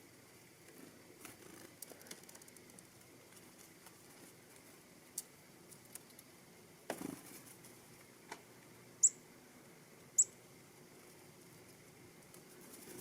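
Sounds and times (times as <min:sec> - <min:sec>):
high-pitched bird chirps: 0:09.0 - 0:09.2, 0:10.2 - 0:10.4.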